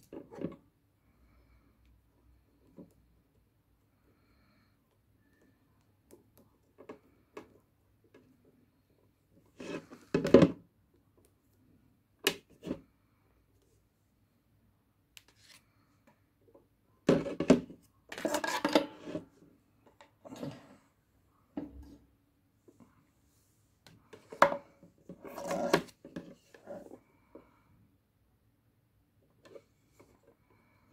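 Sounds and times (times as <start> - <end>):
objects being handled: 17.1 - 20.6, 23.8 - 27.0.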